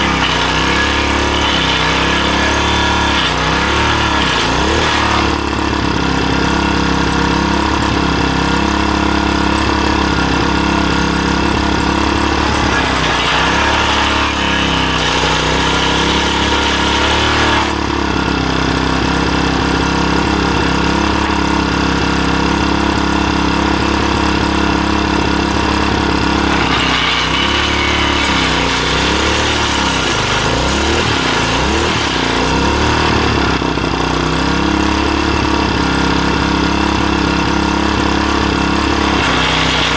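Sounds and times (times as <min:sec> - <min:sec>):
cutter hissing into wood: 0:00.0 - 0:06.8, 0:09.9 - 0:19.6, 0:24.2 - 0:34.2, 0:38.4 - 0:39.9
small engine running: 0:00.0 - 0:39.9.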